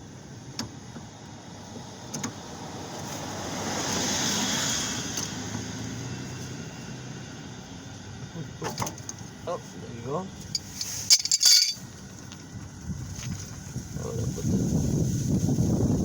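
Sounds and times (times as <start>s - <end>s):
car passing by: 1.7s - 7.7s.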